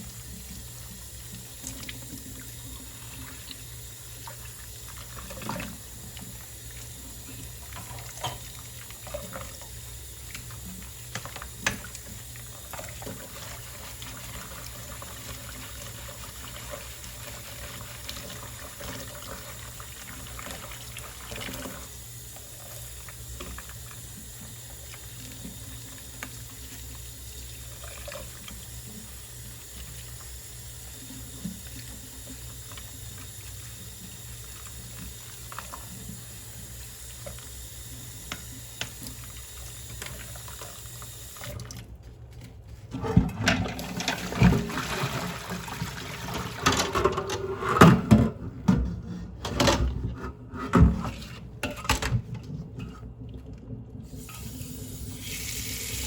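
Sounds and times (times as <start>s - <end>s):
kitchen tap running into sink: 0.0s - 42.0s, 43.0s - 48.8s, 54.0s - 56.0s
dishes clattering in sink: 46.3s - 52.4s.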